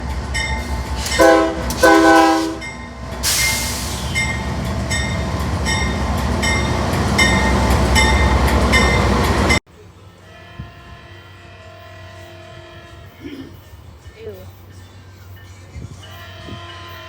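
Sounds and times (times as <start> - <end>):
low rumble of train: 0.0 - 17.0
locomotive air horn blasts: 0.6 - 4.3, 10.2 - 13.8, 16.0 - 17.0
hiss: 3.2 - 4.2.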